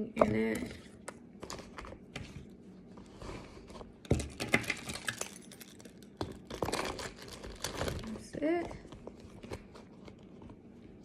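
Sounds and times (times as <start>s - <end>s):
small items clicking and knocking: 4.1s - 10.2s.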